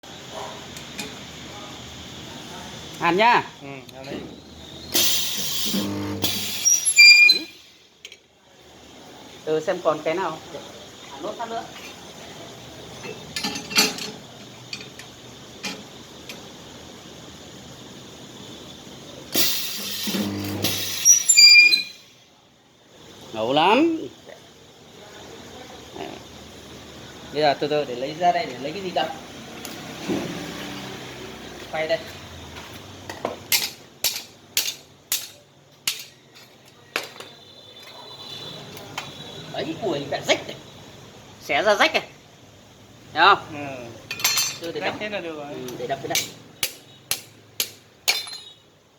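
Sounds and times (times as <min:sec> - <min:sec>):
electric welder crackling hiss: 0:04.8 - 0:07.9, 0:14.9 - 0:22.1.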